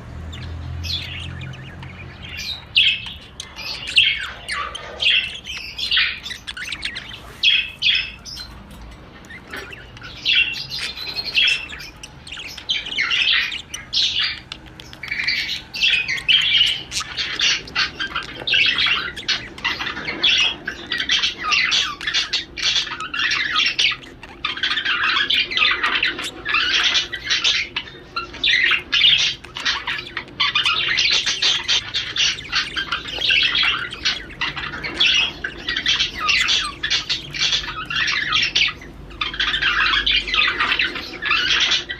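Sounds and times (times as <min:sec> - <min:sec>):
budgerigar chattering warble: 0:00.3 - 0:41.9.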